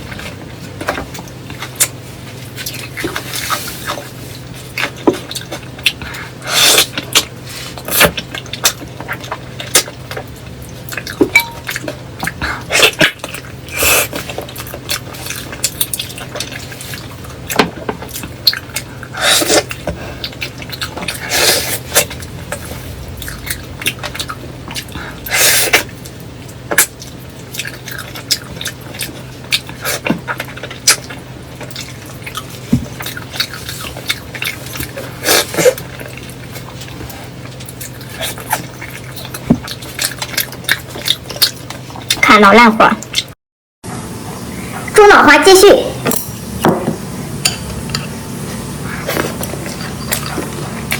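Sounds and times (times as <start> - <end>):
faint low hum: 8.4 - 41.2.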